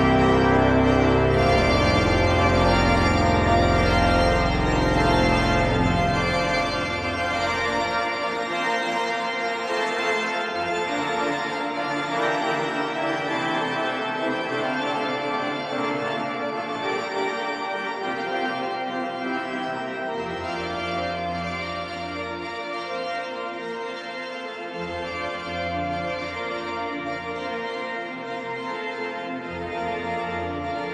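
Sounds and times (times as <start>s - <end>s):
deep organ pedal bass notes: 0.0s - 22.0s
pipe organ chords: 0.0s - 30.9s.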